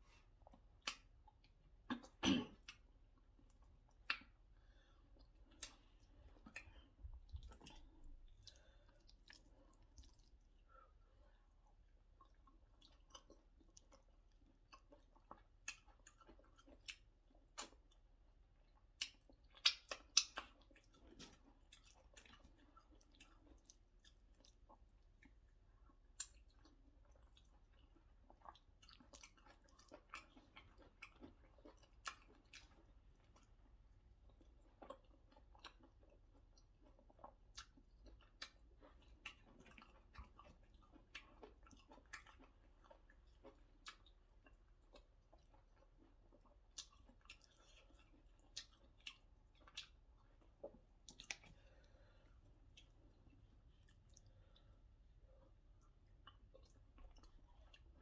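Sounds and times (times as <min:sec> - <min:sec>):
chewing and wet mouth sounds: 0:00.0 - 0:58.0.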